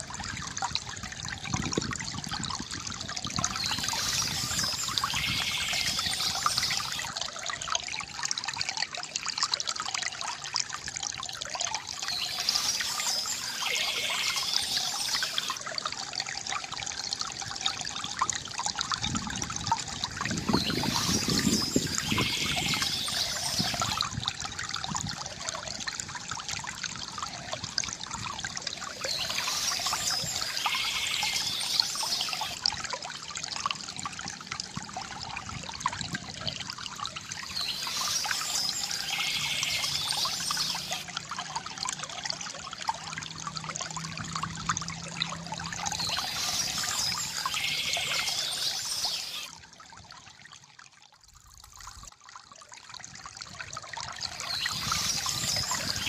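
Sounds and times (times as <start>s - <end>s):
stream trickling: 0.0s - 56.0s
birds singing: 3.4s - 7.1s, 12.0s - 15.6s, 20.3s - 24.0s, 29.0s - 32.6s, 37.4s - 41.0s, 45.8s - 49.5s, 54.3s - 56.0s.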